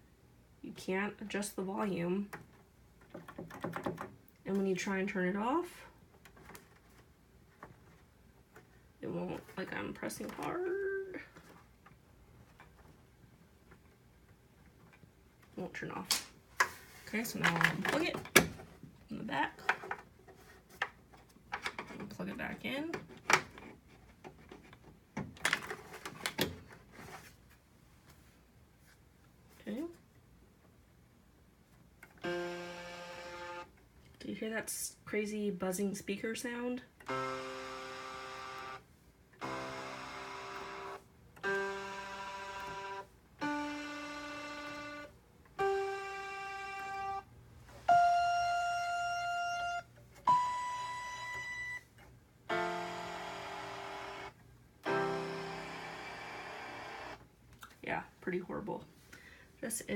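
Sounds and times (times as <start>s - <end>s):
electronic keyboard notes: 32.2s - 33.7s, 37.1s - 38.8s, 39.4s - 47.3s, 47.9s - 51.8s, 52.5s - 57.2s
buzzing from speaker: 52.5s - 57.2s.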